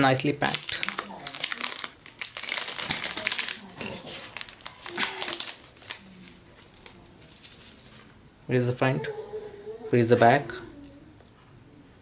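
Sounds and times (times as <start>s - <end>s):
plastic wrap crinkling: 0.0s - 8.2s.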